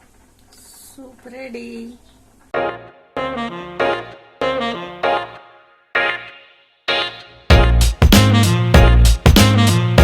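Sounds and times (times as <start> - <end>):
jazz background music: 2.5 - 10.0
horn lead phrases: 2.6 - 10.0.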